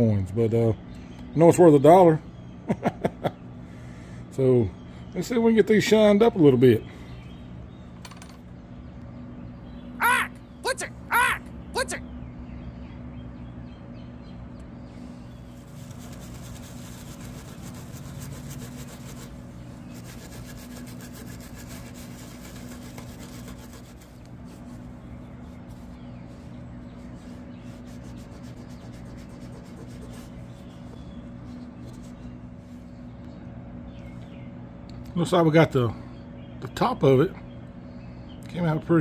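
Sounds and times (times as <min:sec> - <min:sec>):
steady low hum: 0:00.0 - 0:39.0
coin being rubbed: 0:15.7 - 0:24.2, 0:27.7 - 0:30.5.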